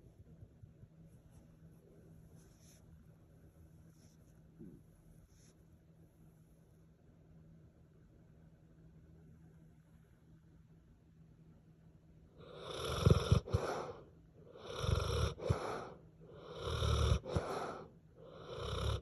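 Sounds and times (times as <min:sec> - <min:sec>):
dog snoring: 0:12.4 - 0:19.0.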